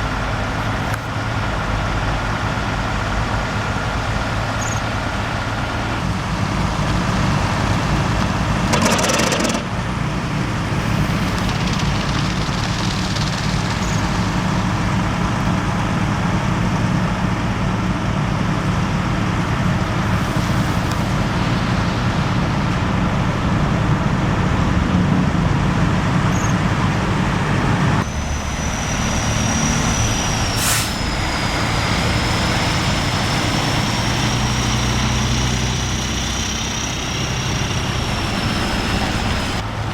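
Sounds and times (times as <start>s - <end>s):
road noise: 0.0s - 39.9s
vehicle engine hum: 0.0s - 39.9s
short noisy burst: 10.5s - 15.4s
faint high whine: 28.0s - 33.7s.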